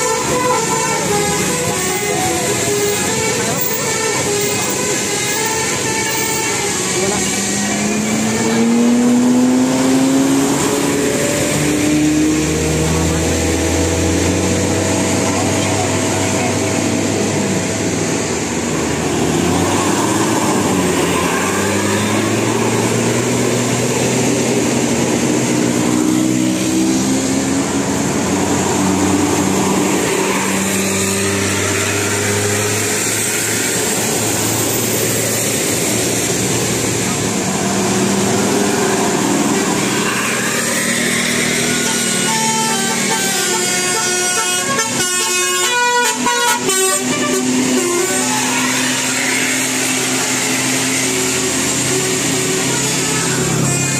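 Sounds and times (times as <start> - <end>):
bus multi-tone air horn melody: 0.0 - 9.6, 38.8 - 53.9.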